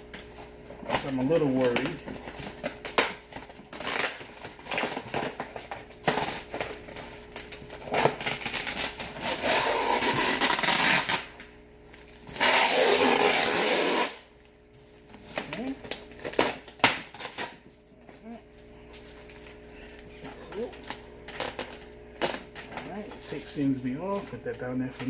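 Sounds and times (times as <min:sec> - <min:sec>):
packing tape ripping: 0:00.8 - 0:14.3, 0:15.1 - 0:17.6, 0:20.4 - 0:23.5.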